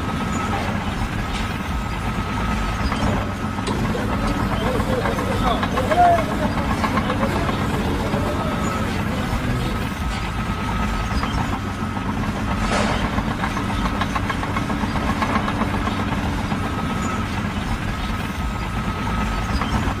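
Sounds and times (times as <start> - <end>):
heavy engine rumbling: 0.0 - 20.0.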